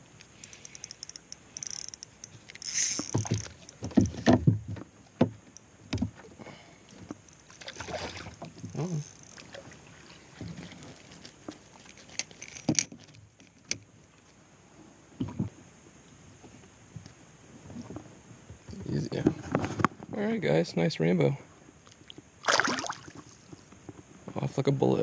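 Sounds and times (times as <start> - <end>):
fish knocking and splashing: 2.9 - 6.2, 22.4 - 23.6.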